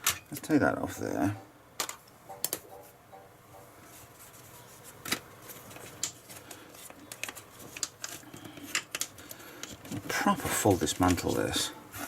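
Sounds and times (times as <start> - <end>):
soft rubbing of small parts: 2.3 - 12.0.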